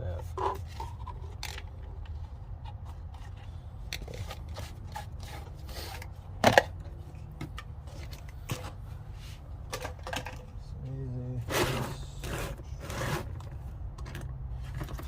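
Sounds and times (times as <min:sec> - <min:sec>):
clicks taps and rustles: 0:00.2 - 0:08.8.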